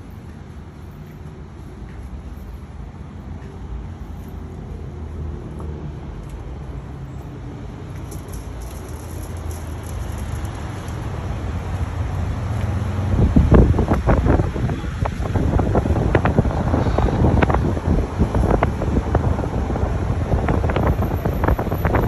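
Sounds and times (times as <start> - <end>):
wind buffeting microphone: 8.1 - 22.0.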